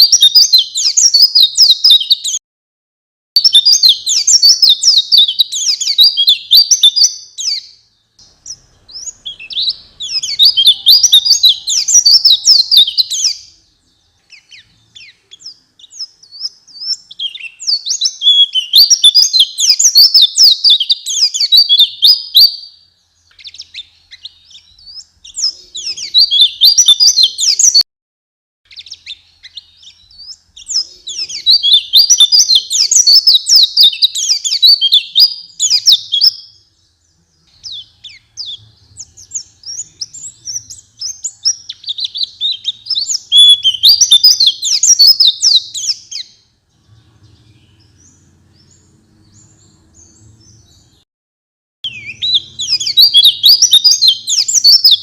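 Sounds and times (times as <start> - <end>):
bird twittering song: 0.0 - 2.4, 3.4 - 27.8, 28.7 - 51.0, 51.8 - 55.0.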